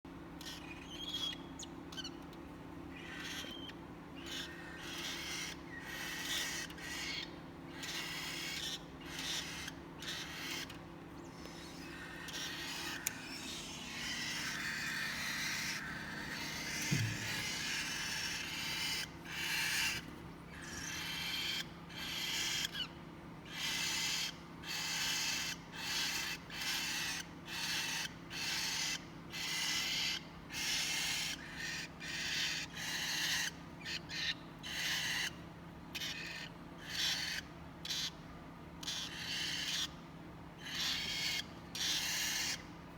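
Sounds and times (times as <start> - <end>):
steady low hum: 0.1 - 23.9
chicks raspy hissing calls: 4.2 - 22.3.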